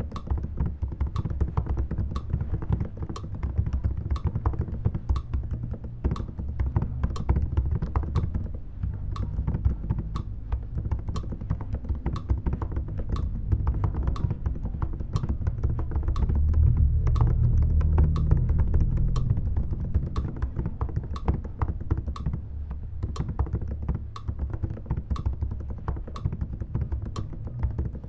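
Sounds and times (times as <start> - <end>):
fast typing on keyboard: 0.0 - 22.4, 23.0 - 28.0
low rumble: 13.1 - 21.0.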